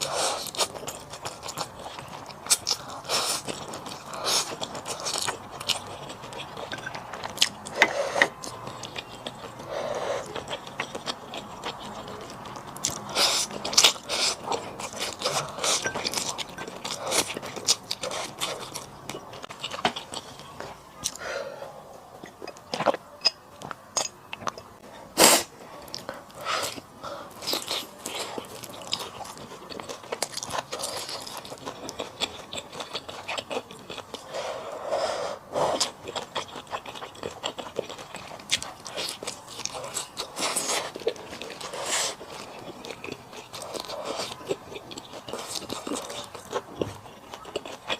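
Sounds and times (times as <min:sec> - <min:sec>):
person chewing: 0:00.0 - 0:47.9.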